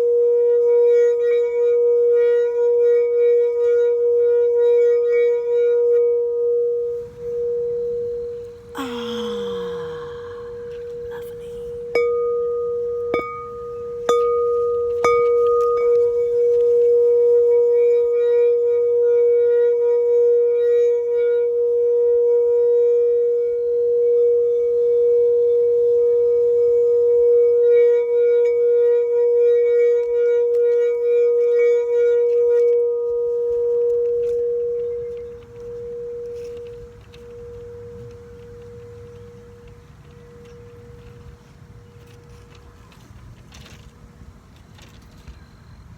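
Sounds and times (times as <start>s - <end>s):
singing bowl struck and ringing: 11.9s - 18.2s.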